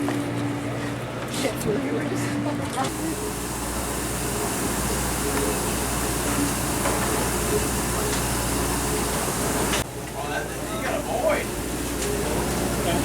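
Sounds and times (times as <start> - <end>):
faint voices: 0.6 - 13.0
boat engine drone: 2.9 - 13.0.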